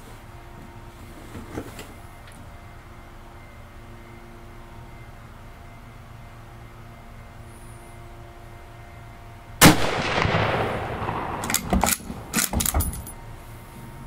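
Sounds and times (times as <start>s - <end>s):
rifle shot with echo: 9.6s - 12.8s
rifle bolt metallic clacks: 11.3s - 13.2s.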